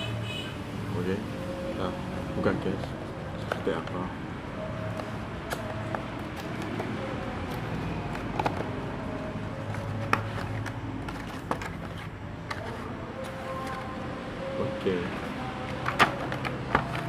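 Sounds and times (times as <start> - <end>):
packaging clicks and taps: 2.8 - 4.0, 4.8 - 14.0, 15.2 - 17.0.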